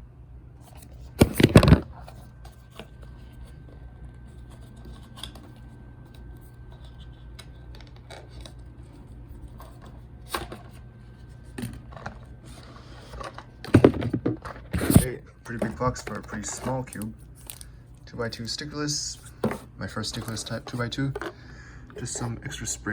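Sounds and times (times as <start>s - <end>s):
knock on box: 13.7s - 15.0s.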